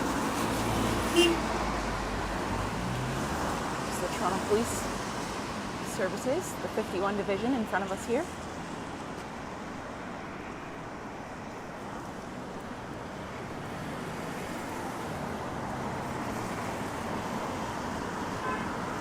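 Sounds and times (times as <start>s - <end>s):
tyres hissing on wet road: 0.0s - 6.7s.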